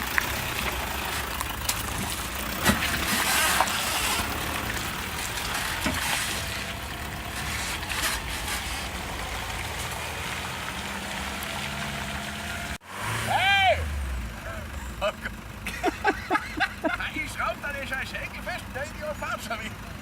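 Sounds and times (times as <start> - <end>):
diesel engine running at low revs: 0.0 - 20.0.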